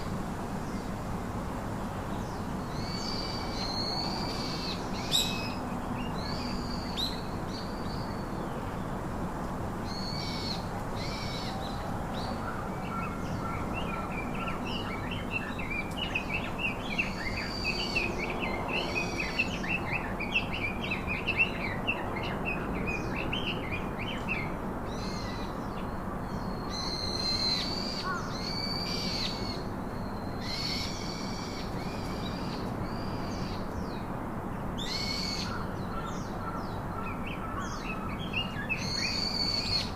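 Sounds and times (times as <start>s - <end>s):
birds calling: 34.8s - 39.9s.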